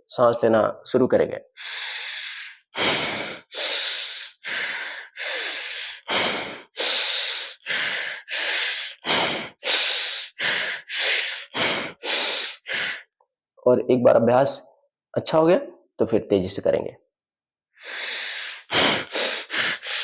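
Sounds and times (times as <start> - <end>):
man breathing through nostril: 1.6 - 13.1, 17.8 - 20.0.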